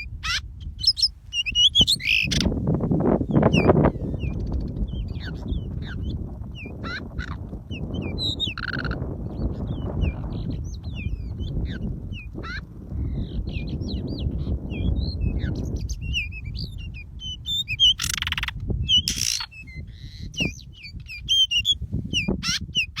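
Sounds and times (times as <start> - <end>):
low rumbling noise: 0.0 - 17.4
bird whistled chirps: 0.3 - 2.5, 3.3 - 7.0, 7.8 - 8.8, 9.4 - 23.0.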